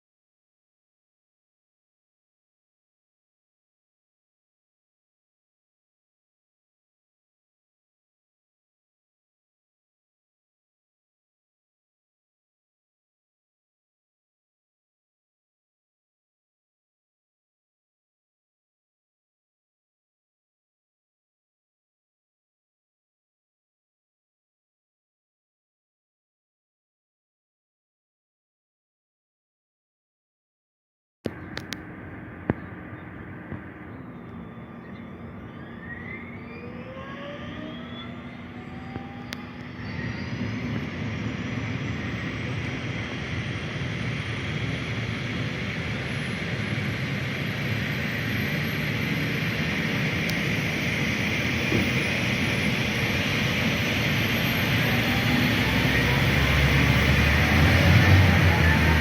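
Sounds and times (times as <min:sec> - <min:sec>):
helicopter engine and rotor noise: 0:31.3 - 0:59.0
helicopter turbine whine rising: 0:31.3 - 0:59.0.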